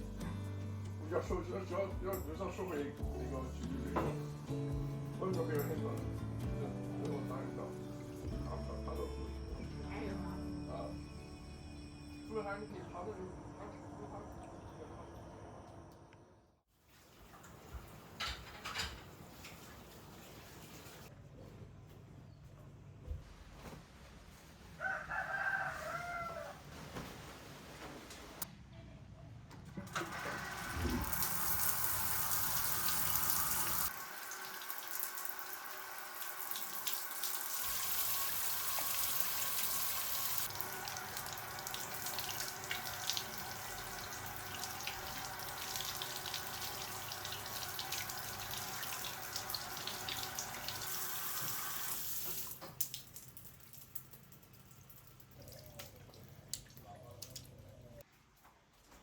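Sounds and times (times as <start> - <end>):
running water splashing: 30.0 - 57.4.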